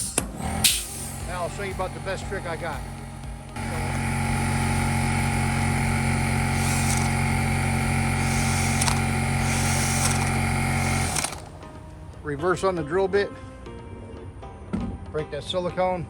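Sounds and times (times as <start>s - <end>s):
power drill running: 0.0s - 12.2s.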